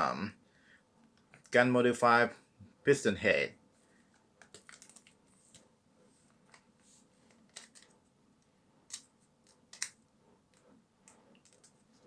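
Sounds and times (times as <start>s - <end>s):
clicks of small parts handled: 8.9s - 10.0s.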